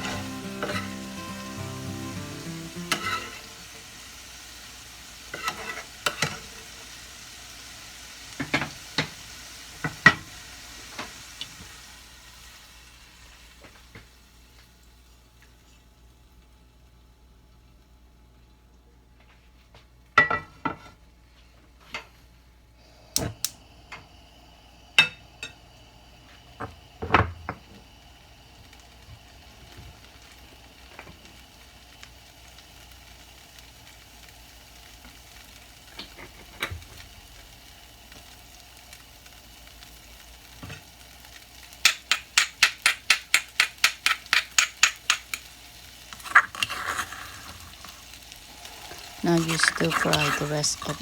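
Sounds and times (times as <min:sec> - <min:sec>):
cookware and utensils clinking: 0:00.0 - 0:03.6, 0:20.2 - 0:21.0, 0:41.8 - 0:45.5, 0:46.1 - 0:51.0.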